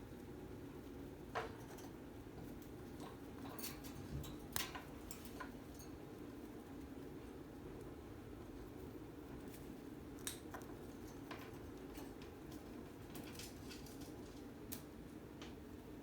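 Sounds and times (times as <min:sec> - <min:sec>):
low room hum: 0:00.0 - 0:16.0
birds clicking and tapping on cage: 0:01.3 - 0:06.9, 0:09.3 - 0:14.9.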